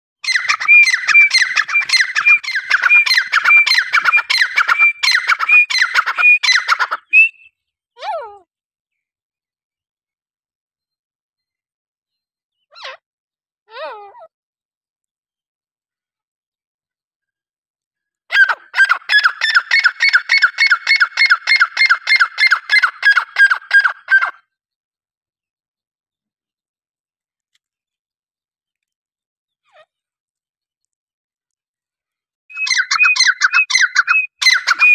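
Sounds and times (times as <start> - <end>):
partridge calling: 0.2 - 7.5, 18.3 - 24.4, 32.5 - 34.9.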